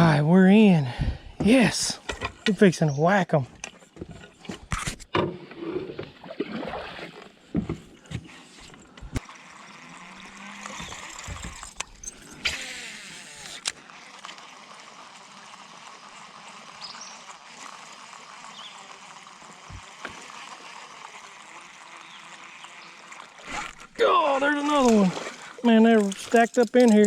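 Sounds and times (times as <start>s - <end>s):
flowing trickling water: 8.7s - 13.4s, 17.6s - 27.0s.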